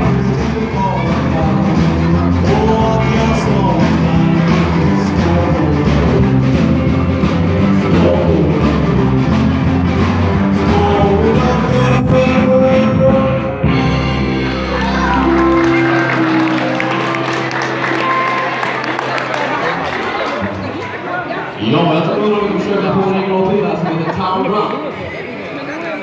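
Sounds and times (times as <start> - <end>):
person singing: 0.0 - 9.3, 10.3 - 19.2
bass line: 0.0 - 20.8
electric guitar: 0.0 - 21.4.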